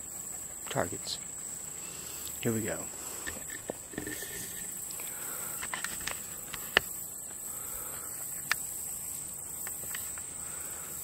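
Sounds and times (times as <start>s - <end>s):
crickets chirring: 0.0s - 11.0s.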